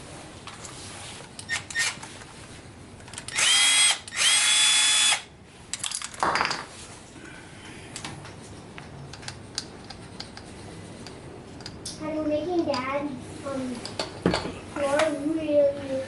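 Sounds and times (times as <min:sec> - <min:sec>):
power drill motor whine: 0:03.3 - 0:05.3.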